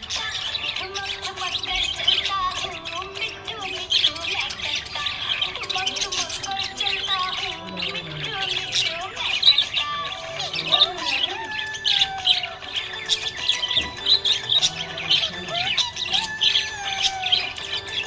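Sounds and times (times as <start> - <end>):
budgerigar chirping and warbling: 0.0 - 18.0.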